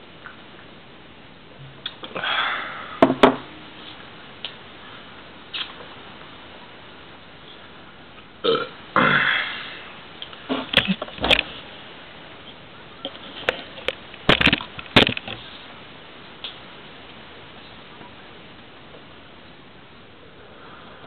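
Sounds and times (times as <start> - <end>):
man burping: 8.4 - 9.8
sharp clicks and knocks: 13.0 - 15.4.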